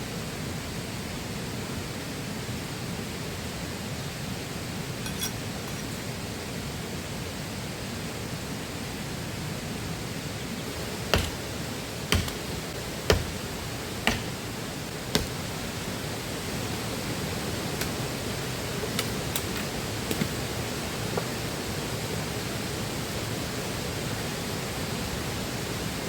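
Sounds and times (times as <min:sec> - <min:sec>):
river flowing: 0:09.4 - 0:23.7
sharp knocks: 0:11.1 - 0:11.5, 0:12.1 - 0:12.5, 0:13.1 - 0:14.4, 0:15.1 - 0:15.5.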